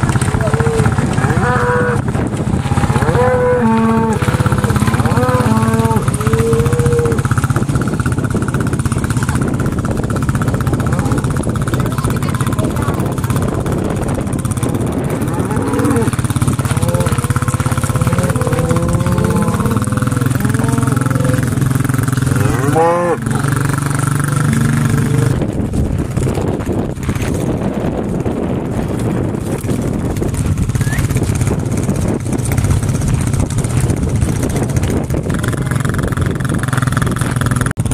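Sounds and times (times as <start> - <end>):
engine running: 0.0 - 37.9
wind buffeting microphone: 0.0 - 37.9
cow mooing: 0.2 - 7.6, 14.5 - 25.5.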